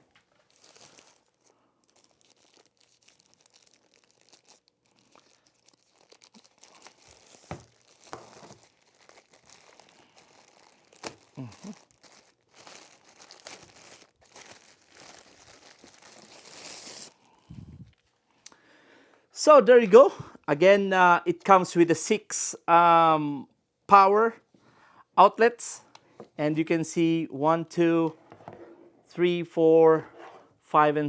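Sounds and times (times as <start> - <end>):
packaging crinkling: 0.0 - 17.5.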